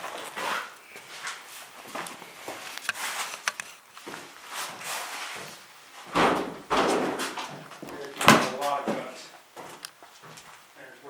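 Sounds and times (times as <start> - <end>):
footsteps on hard floor: 1.0 - 10.7.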